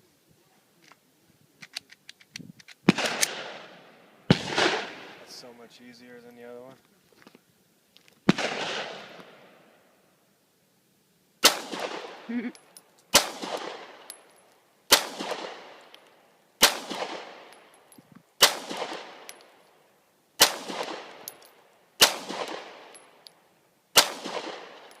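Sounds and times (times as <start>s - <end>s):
pistol shots with ringing echo: 2.9s - 5.2s, 8.3s - 9.5s, 11.4s - 12.3s, 13.1s - 16.0s, 16.6s - 17.7s, 18.4s - 19.6s, 20.4s - 23.3s, 24.0s - 25.0s.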